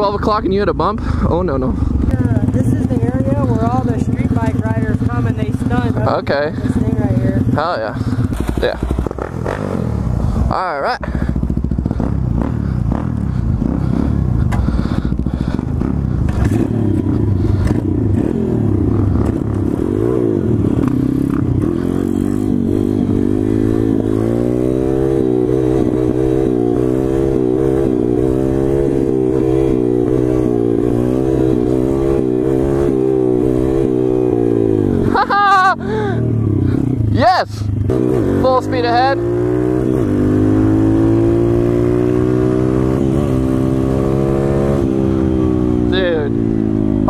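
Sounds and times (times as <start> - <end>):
small motorbike engine revving: 11.1 - 47.0.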